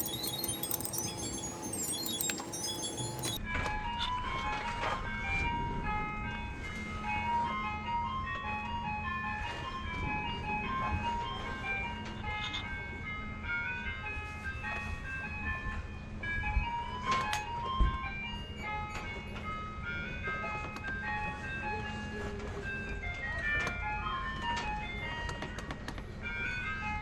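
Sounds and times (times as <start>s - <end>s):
high-note melody: 0.0s - 3.4s.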